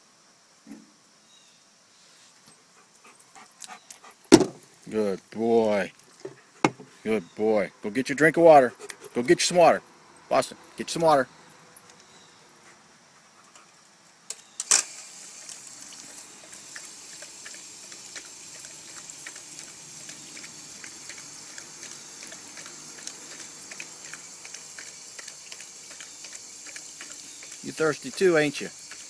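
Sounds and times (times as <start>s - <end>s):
water fountain running: 14.7s - 29.0s
dog drinking splashes: 15.0s - 29.0s.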